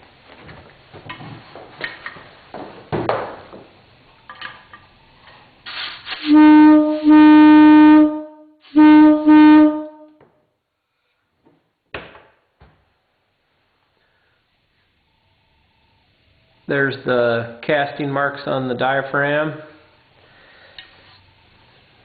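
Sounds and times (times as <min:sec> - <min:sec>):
handling knocks and rustles: 0:00.2 - 0:03.8
locomotive air horn blasts: 0:06.1 - 0:10.2.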